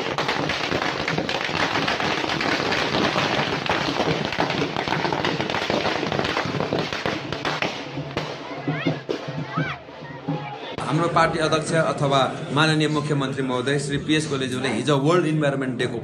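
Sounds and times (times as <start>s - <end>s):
firecrackers crackling: 0.0s - 9.5s.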